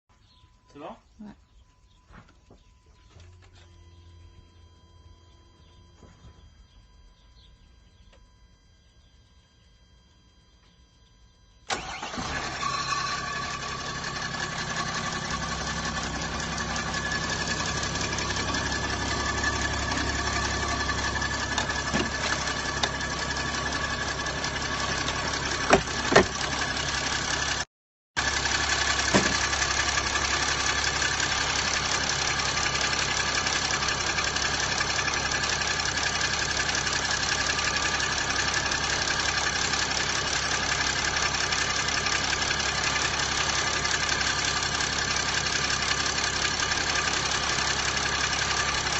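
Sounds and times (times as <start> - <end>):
diesel engine starting and idling: 11.6 - 48.9.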